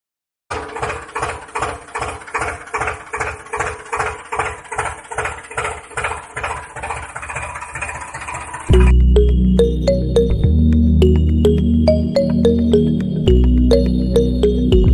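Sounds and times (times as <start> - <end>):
small motor chugging: 0.5 - 8.8.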